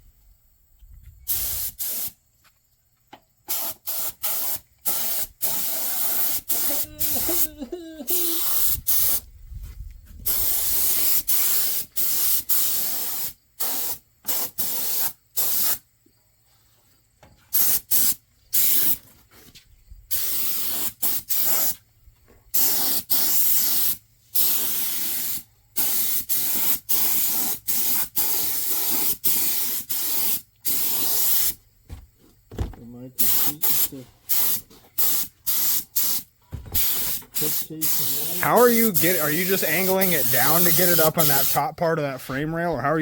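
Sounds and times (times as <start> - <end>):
spray gun hissing in bursts: 1.3 - 2.2, 3.5 - 9.2, 10.2 - 15.8, 17.5 - 19.0, 20.1 - 21.8, 22.6 - 31.6, 33.2 - 41.7.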